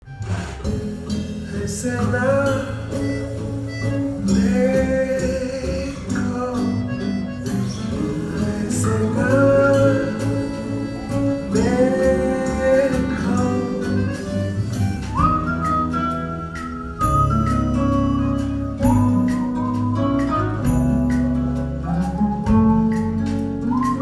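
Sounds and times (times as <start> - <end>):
guitar: 0.0 - 24.0
person singing: 0.8 - 15.1.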